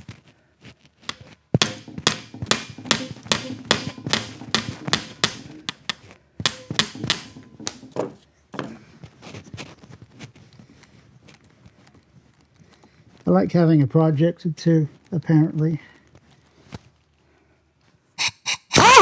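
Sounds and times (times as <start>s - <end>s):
hammer striking metal: 1.1s - 8.1s, 18.2s - 19.0s.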